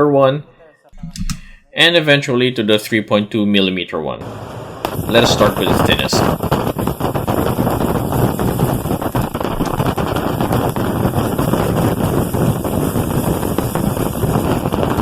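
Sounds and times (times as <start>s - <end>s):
welding arc crackling: 4.2s - 15.0s.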